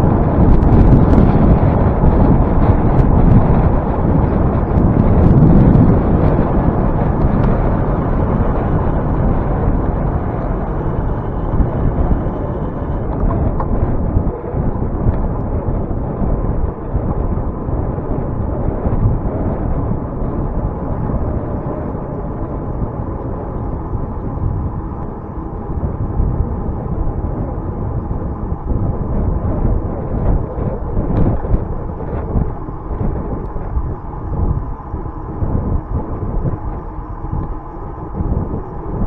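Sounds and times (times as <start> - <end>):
wind buffeting microphone: 0.0 - 39.0.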